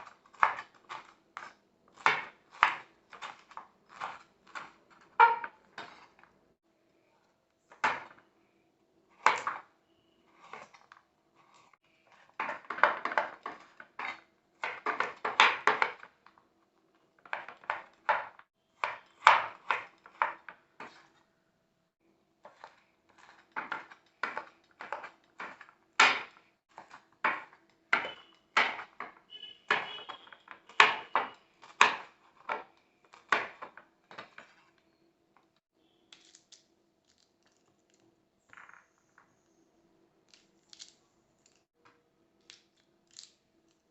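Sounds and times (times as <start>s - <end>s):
knife chopping on cutting board: 0.0s - 6.1s.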